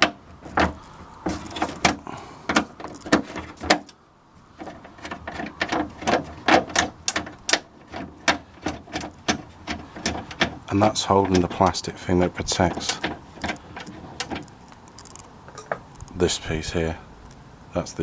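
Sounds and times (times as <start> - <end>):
spanner clicking on a nut: 4.8 - 11.8, 12.5 - 16.2.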